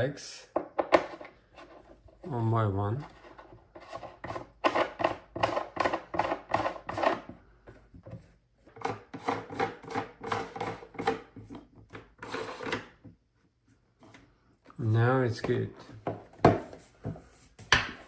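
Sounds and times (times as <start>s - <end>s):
plastic parts scraping and rubbing: 1.0s - 7.3s, 8.1s - 13.1s.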